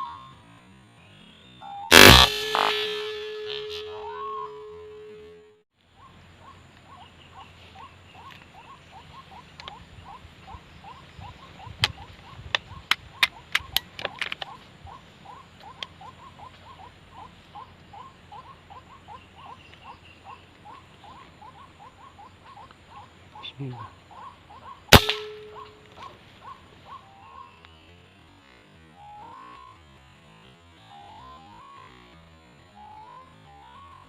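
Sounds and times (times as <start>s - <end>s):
sharp loud clicks: 1.9s - 4.1s, 24.9s - 26.1s
waterhen calling: 14.5s - 27.4s.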